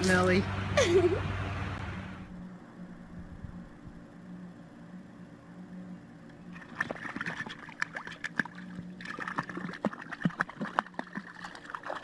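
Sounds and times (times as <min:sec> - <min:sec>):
faint steady hum: 0:00.0 - 0:12.0
water splashing and sloshing: 0:06.5 - 0:12.0.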